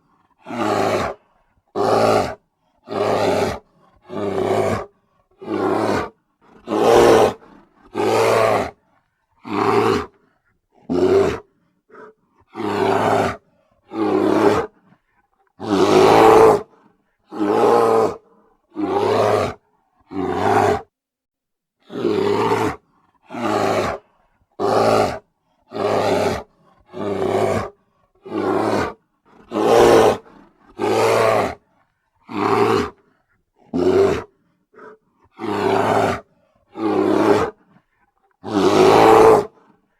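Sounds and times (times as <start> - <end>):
bear roaring: 0.2 - 8.8, 9.4 - 10.2, 10.8 - 14.8, 15.6 - 20.9, 21.9 - 31.6, 32.3 - 37.7, 38.4 - 39.6.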